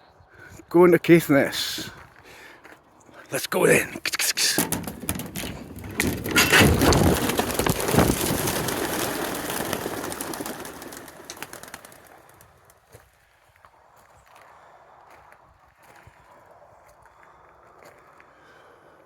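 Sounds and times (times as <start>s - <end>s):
pigeon wingbeats clattering: 3.6s - 12.7s.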